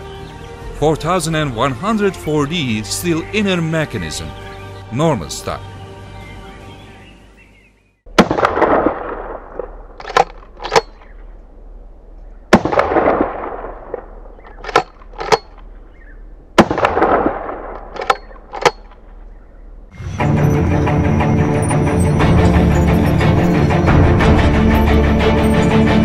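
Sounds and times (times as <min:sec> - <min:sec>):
shotgun shots echoing: 0:08.1 - 0:11.1, 0:12.5 - 0:15.7, 0:16.6 - 0:19.2
shotgun pump clacks: 0:10.0 - 0:11.1, 0:14.5 - 0:15.7, 0:17.8 - 0:19.0.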